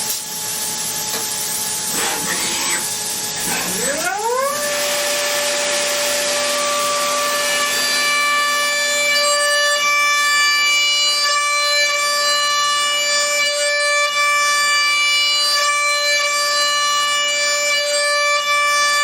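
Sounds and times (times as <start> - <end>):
machine spindle whine: 0.8 - 11.2.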